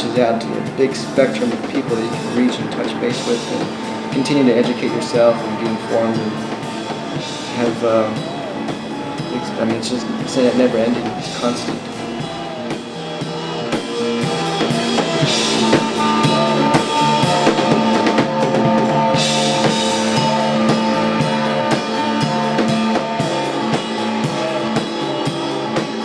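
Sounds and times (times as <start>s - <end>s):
long held notes: 0.0s - 22.9s
bass line: 0.0s - 23.6s
drum kit beat: 0.0s - 24.0s.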